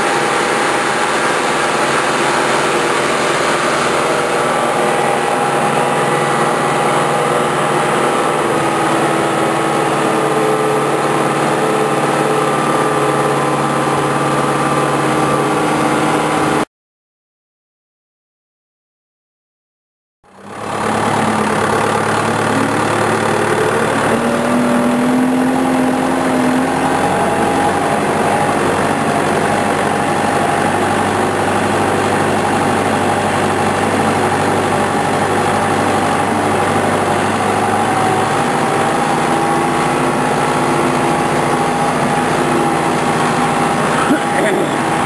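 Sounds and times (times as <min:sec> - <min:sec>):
farm vehicle engine running: 0:00.0 - 0:16.7, 0:20.3 - 0:45.0.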